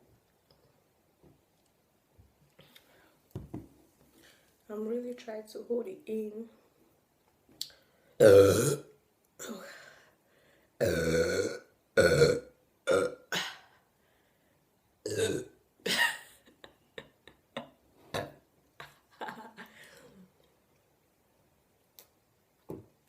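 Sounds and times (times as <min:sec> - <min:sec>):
woman burping: 0:08.2 - 0:09.7, 0:10.8 - 0:13.7, 0:15.1 - 0:16.3, 0:18.1 - 0:18.4.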